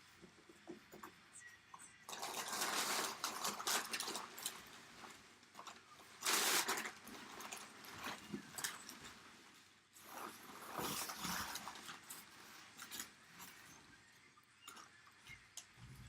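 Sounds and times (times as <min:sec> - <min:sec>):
plastic shrink wrap crinkling: 0:02.1 - 0:13.9.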